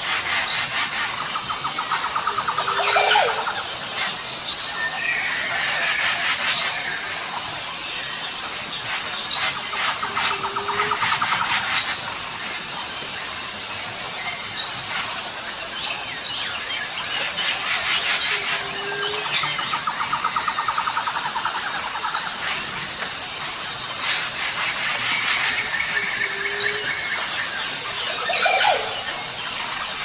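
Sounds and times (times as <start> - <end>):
pulsing insect drone: 0.0 - 30.0.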